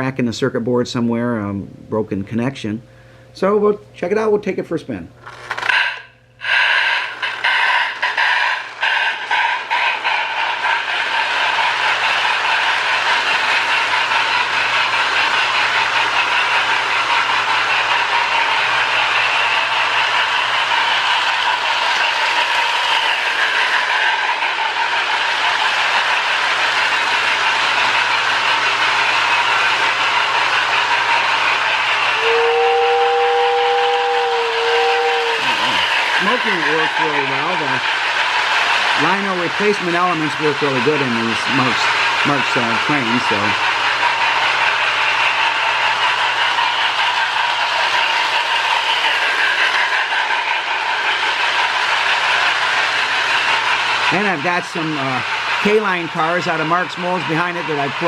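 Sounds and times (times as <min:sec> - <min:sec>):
toy train steam-engine sound: 0:05.2 - 0:58.0
two-note train whistle: 0:32.1 - 0:35.8.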